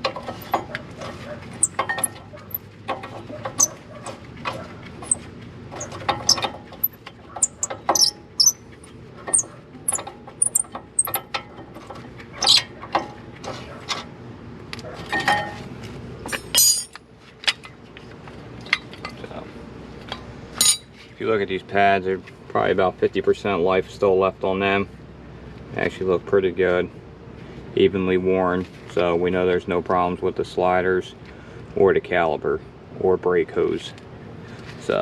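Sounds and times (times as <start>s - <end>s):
metallic clinks and scrapes of tools: 0.0s - 5.2s, 5.8s - 12.6s, 16.3s - 17.7s, 20.6s - 21.1s.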